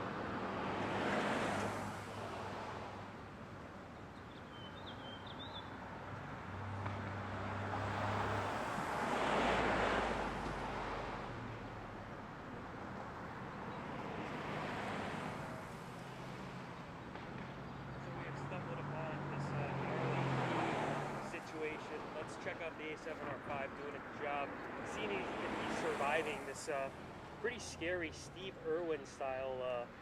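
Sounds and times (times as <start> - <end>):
cars passing: 0.0 - 30.0
bird chirp: 3.9 - 5.8.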